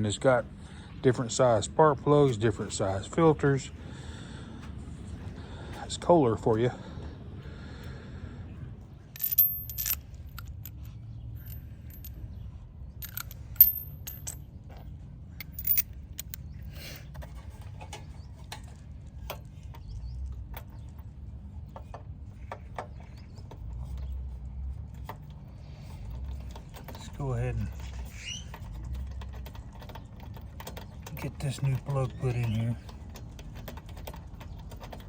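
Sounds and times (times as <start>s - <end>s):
metal tools clinking: 9.1s - 12.4s, 13.0s - 14.8s, 15.4s - 16.5s
small clicks and rattles: 13.0s - 35.0s.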